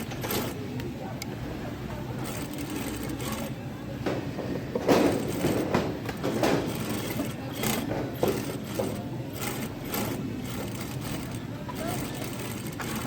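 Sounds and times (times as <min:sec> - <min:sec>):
sewing machine clattering: 0:00.0 - 0:00.6, 0:02.2 - 0:03.6, 0:04.9 - 0:13.0
loud knocks: 0:04.1 - 0:09.0.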